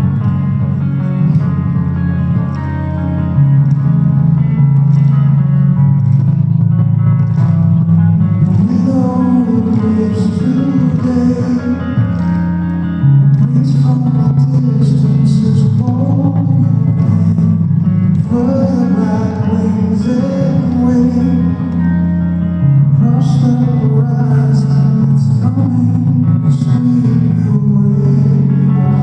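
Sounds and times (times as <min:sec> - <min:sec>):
rock band playing: 0:00.0 - 0:23.6
electric guitar: 0:00.0 - 0:29.0
person singing: 0:08.3 - 0:29.0.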